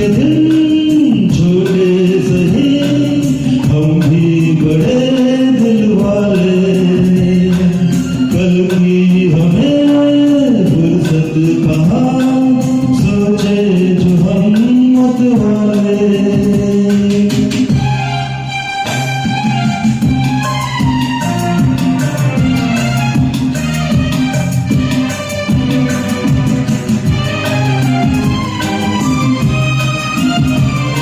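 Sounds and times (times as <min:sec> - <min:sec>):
man singing: 0:00.0 - 0:17.9
instrumental backing track: 0:00.0 - 0:31.0.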